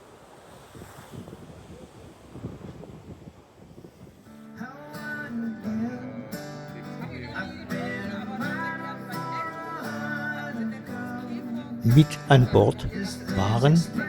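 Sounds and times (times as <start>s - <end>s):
strummed acoustic guitar music: 4.3s - 14.0s.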